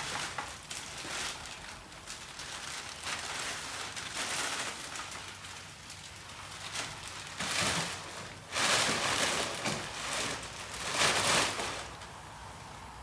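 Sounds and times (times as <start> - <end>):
packaging crinkling and rustling: 0.0 - 12.2.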